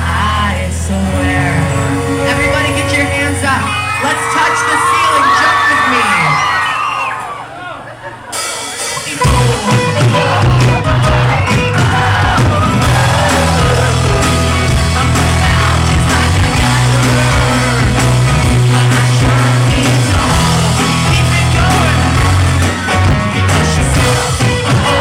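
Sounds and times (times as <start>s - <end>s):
live pop-rock band playing: 0.0s - 25.0s
person singing: 9.0s - 25.0s.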